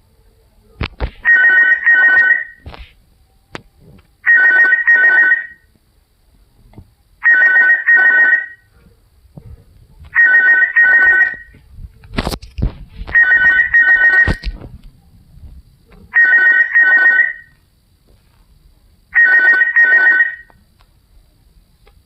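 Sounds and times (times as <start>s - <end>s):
phone ring tone: 1.2s - 2.6s, 4.2s - 5.7s, 7.2s - 8.6s, 10.2s - 11.5s, 13.1s - 14.4s, 16.2s - 17.6s, 19.2s - 20.5s.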